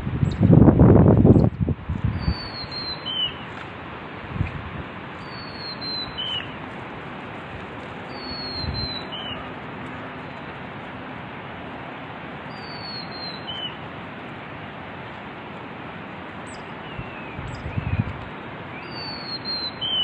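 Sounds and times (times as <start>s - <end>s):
wind buffeting microphone: 0.0s - 11.0s, 16.5s - 18.6s
river rushing: 1.8s - 20.0s
bird whistled call: 2.1s - 3.5s, 5.2s - 6.6s, 8.1s - 9.5s, 12.5s - 13.8s, 16.5s - 18.0s, 18.7s - 20.0s.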